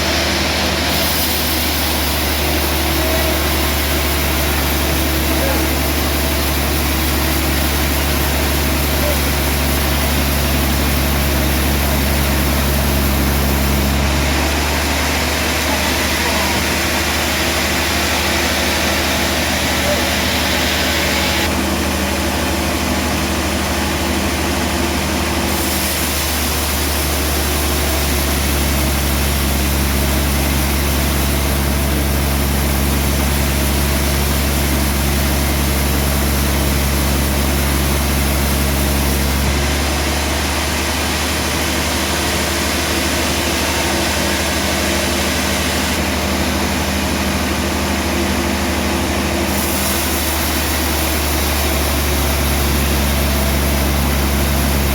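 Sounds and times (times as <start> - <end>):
sawmill engine running: 0.0 - 54.9.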